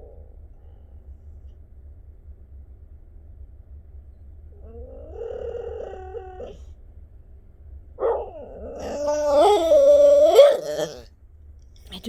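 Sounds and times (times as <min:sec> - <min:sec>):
cat purring: 0:08.0 - 0:11.1
cat crying: 0:08.6 - 0:11.0
cat meowing: 0:08.8 - 0:11.0.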